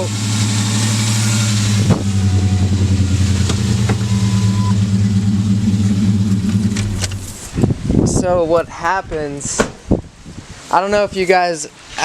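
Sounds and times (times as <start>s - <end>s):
engine idling roughly: 0.0s - 7.6s.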